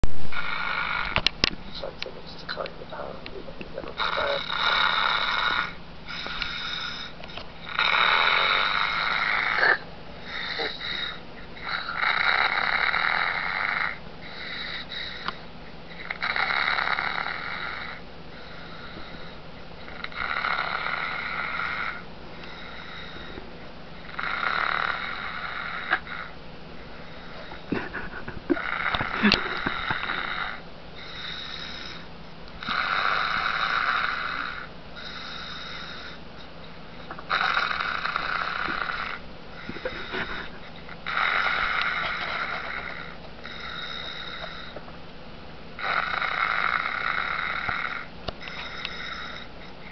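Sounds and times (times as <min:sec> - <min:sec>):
man snoring through a speaker: 0:00.3 - 0:44.8, 0:45.8 - 0:49.9
quiet breaths: 0:01.0 - 0:07.5, 0:10.2 - 0:12.0, 0:17.3 - 0:20.2, 0:21.0 - 0:24.2, 0:24.9 - 0:27.8, 0:28.4 - 0:44.9, 0:46.7 - 0:49.9.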